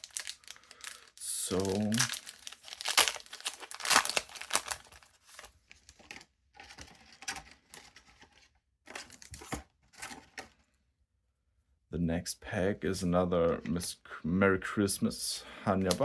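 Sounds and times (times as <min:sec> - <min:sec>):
wrapper crinkling and ripping: 0:00.0 - 0:05.6
wrapper rustling: 0:00.0 - 0:08.0.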